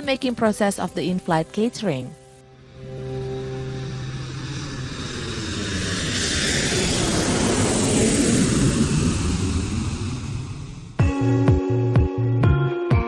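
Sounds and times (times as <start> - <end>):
jet aircraft passing: 2.4 - 11.0.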